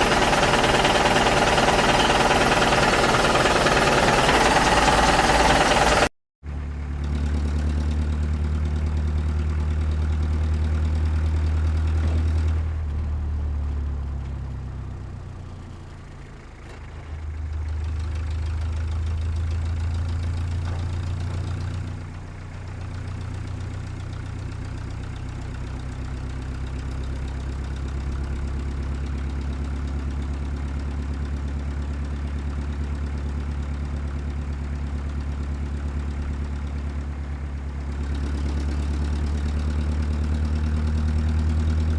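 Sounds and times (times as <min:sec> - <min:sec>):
diesel engine humming: 0:00.0 - 0:23.8.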